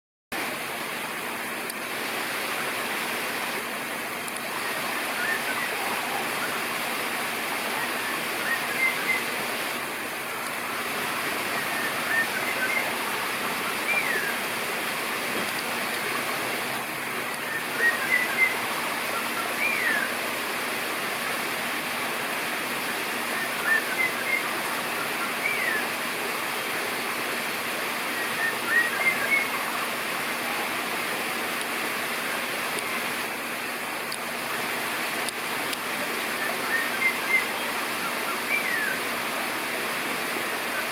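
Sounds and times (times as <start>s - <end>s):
running water: 0.3s - 40.9s
bird chirping and whistling: 4.6s - 6.7s, 7.7s - 9.4s, 11.4s - 14.5s, 17.3s - 20.2s, 23.0s - 26.0s, 28.1s - 29.8s, 36.4s - 39.1s.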